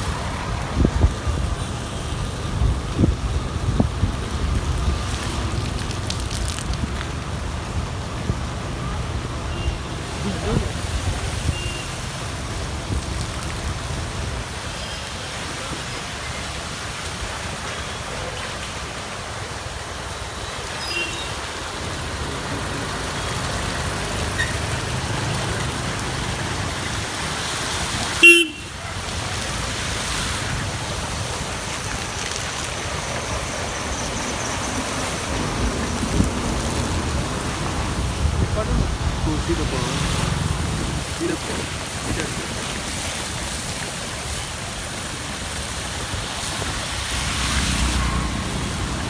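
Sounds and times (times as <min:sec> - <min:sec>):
road traffic noise: 0:00.0 - 0:49.0
vehicle horn toot: 0:11.5 - 0:12.0, 0:28.2 - 0:28.7.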